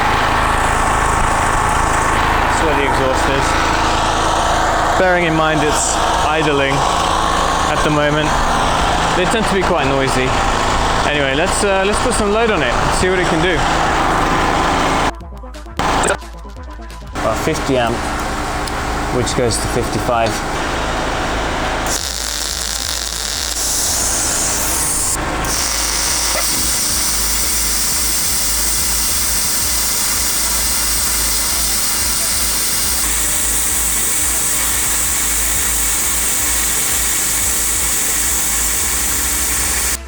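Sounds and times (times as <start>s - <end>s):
generator engine running: 0.0s - 15.2s, 15.8s - 16.2s, 17.2s - 40.0s
plasma cutter hiss and buzz: 21.8s - 40.0s.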